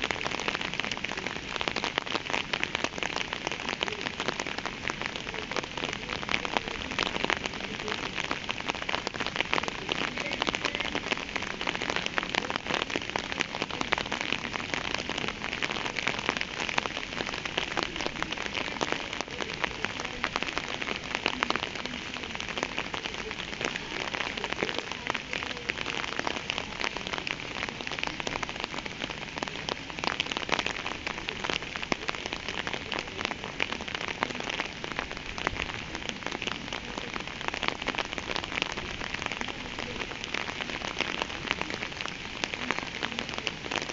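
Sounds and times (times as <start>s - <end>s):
steady rain falling: 0.0s - 43.9s.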